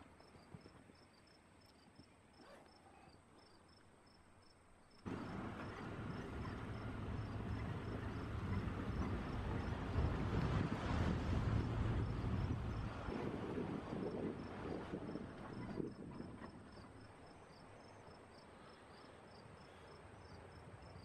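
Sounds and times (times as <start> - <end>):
vehicle engine running: 5.1 - 15.6
wind on microphone: 5.1 - 17.0.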